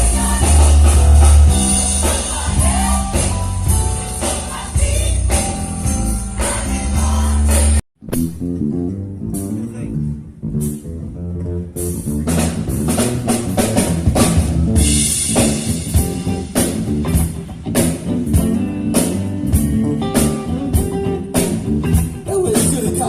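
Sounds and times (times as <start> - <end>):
steady drum beat: 0.0 - 7.8, 12.2 - 23.0
band playing: 0.0 - 23.0.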